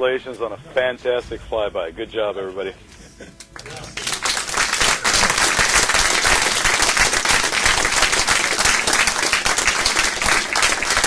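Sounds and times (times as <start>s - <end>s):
crowd applauding: 3.6s - 11.0s.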